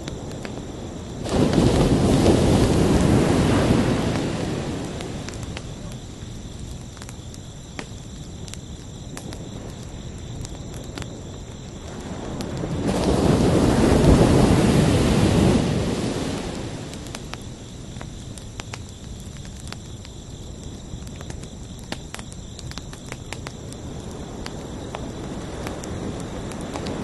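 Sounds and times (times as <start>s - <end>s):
crickets chirring: 0.0s - 27.0s
surf hiss with crackles: 0.0s - 27.0s
ocean waves breaking: 1.2s - 5.5s, 12.7s - 17.1s.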